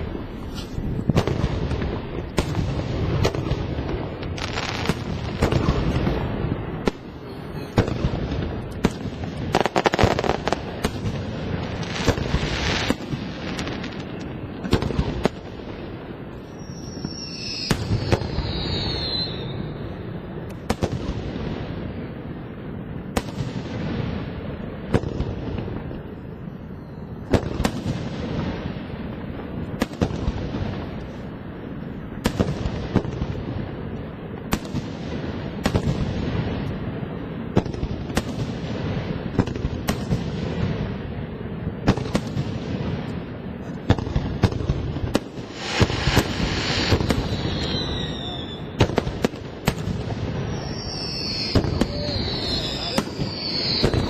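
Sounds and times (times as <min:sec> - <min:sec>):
fireworks booming: 0:00.0 - 0:54.0
falling whistle tones: 0:16.5 - 0:20.0, 0:45.6 - 0:48.8, 0:50.4 - 0:54.0
hissing crackle: 0:45.1 - 0:54.0.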